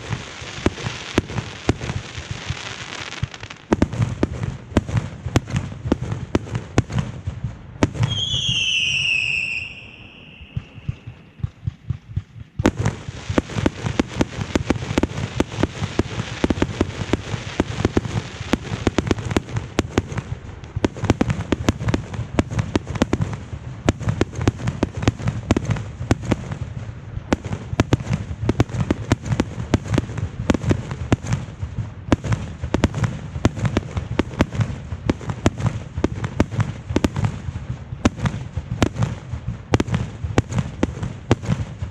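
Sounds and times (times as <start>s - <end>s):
firework bangs: 0.0s - 41.9s
rapid firework crackling barrage: 0.0s - 41.9s
shrill firework whistle: 8.0s - 11.4s.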